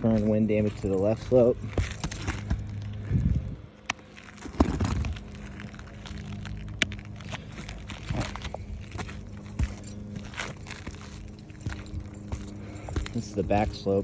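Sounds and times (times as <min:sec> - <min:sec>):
footsteps on shingle roof: 0:00.0 - 0:14.0.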